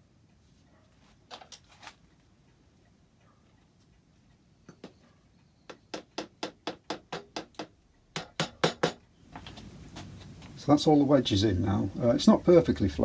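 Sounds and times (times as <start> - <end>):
hammer tapping wood wedges: 5.7 - 10.1.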